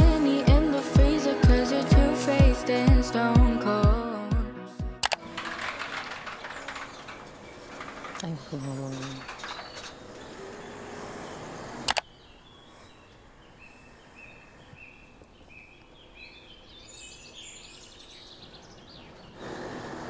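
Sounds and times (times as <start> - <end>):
sharp clicks: 5.0 - 8.3, 11.9 - 12.1.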